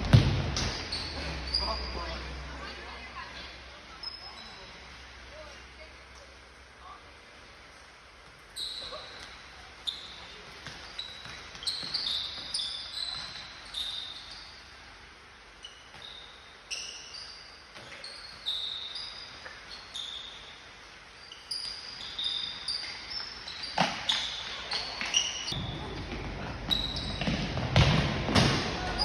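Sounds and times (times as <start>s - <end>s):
ball kicked and bouncing: 0.0s - 0.9s, 25.5s - 28.8s
shoes squeaking on court floor: 0.1s - 6.4s, 7.7s - 29.0s.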